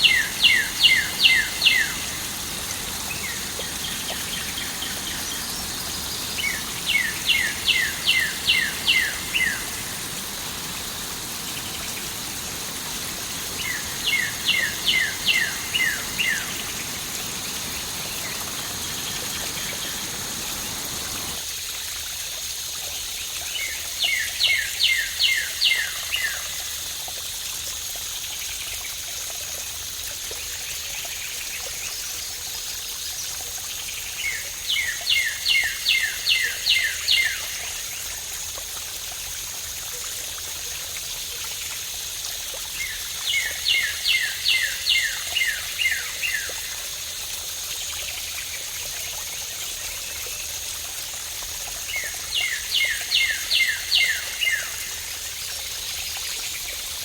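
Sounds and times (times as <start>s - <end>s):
songbird singing: 0.0s - 21.4s, 52.0s - 54.8s
rushing water: 0.0s - 57.0s.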